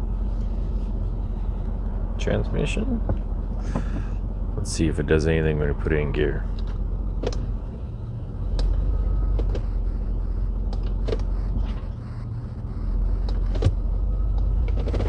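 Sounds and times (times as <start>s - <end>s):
car engine idling: 0.0s - 15.0s
sharp clicks and clunks: 6.5s - 7.5s, 8.5s - 9.7s, 13.2s - 15.0s.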